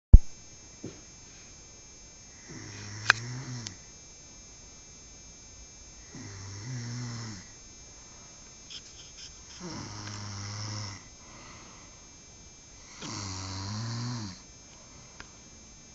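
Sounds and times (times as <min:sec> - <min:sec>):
man snoring: 0:02.3 - 0:03.9, 0:06.0 - 0:07.6, 0:09.4 - 0:12.0, 0:12.8 - 0:15.2.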